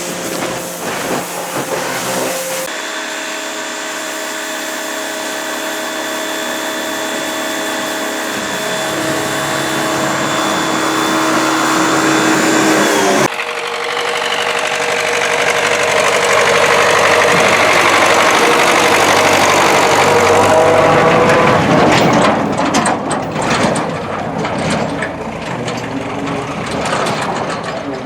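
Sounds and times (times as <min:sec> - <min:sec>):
tractor diesel engine running: 0:00.0 - 0:28.0
rapid knocking clatter: 0:13.3 - 0:28.0.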